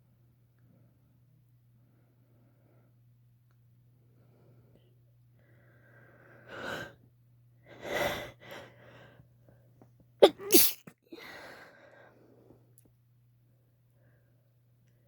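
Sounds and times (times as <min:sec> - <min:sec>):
woman sneezing: 0:10.2 - 0:10.9
woman gasping in-breaths: 0:10.2 - 0:12.0.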